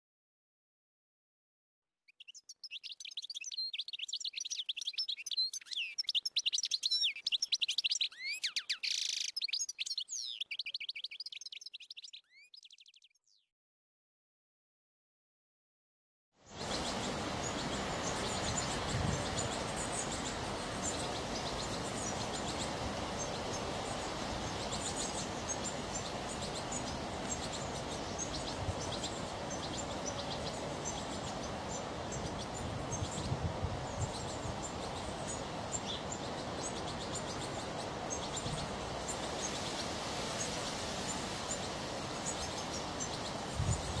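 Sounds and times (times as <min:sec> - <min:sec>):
goldfinches twittering: 0:02.1 - 0:13.4, 0:16.6 - 0:44.0
outdoor background hiss: 0:16.4 - 0:44.0.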